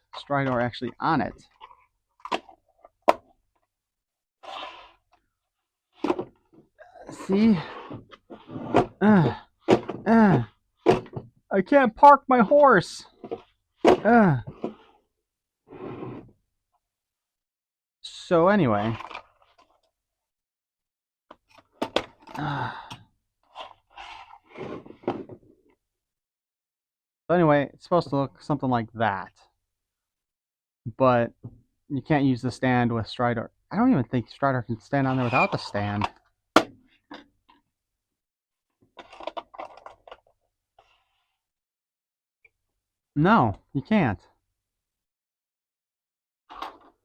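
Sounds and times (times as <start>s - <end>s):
breathy sigh: 22.3s - 23.0s.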